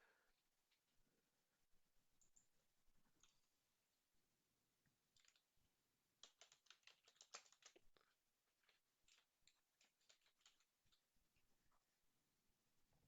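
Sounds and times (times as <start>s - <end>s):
computer keyboard typing: 5.1s - 5.5s, 6.2s - 11.0s.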